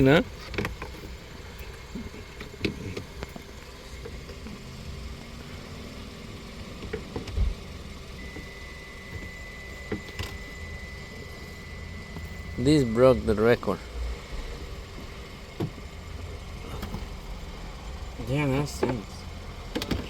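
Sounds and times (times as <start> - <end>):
low motor hum: 0.0 - 20.0
faint high-pitched tone: 7.9 - 14.6.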